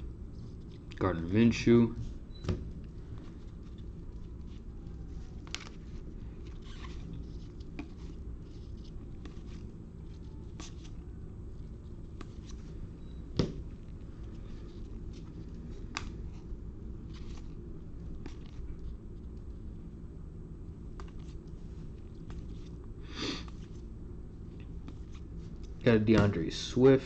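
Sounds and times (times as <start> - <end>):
low room hum: 0.0 - 27.0
cards clicking and rustling: 3.2 - 11.0, 20.9 - 22.8.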